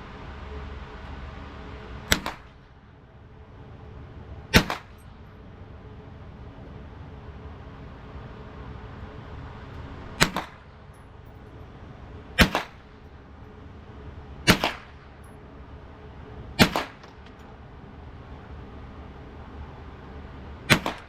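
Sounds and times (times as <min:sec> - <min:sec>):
gunshots with echo: 0:04.6 - 0:05.0, 0:10.2 - 0:10.7, 0:12.4 - 0:12.9, 0:14.5 - 0:15.0, 0:16.6 - 0:17.2, 0:20.7 - 0:21.0.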